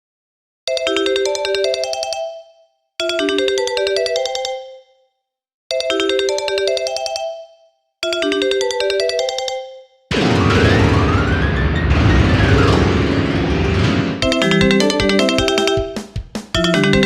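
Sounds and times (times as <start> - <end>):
midi ringtone melody: 0.7 - 4.9, 5.7 - 17.0
dense wall of notes: 10.1 - 14.8.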